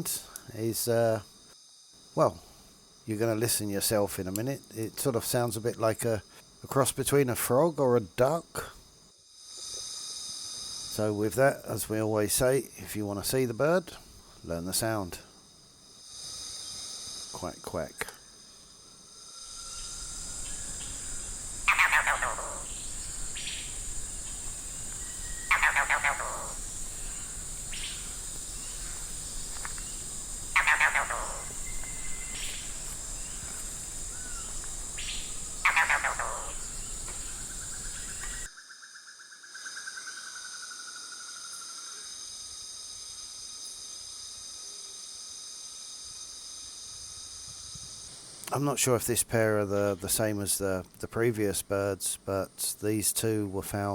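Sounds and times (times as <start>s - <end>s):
high insect drone: 0.0s - 53.9s
bird pulsed croaking call: 19.3s - 42.1s.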